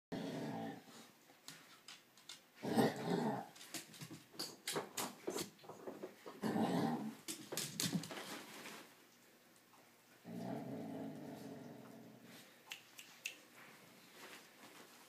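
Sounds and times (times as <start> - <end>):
dogs growling: 0.1 - 1.0, 2.6 - 3.6, 6.3 - 7.3, 10.2 - 12.4.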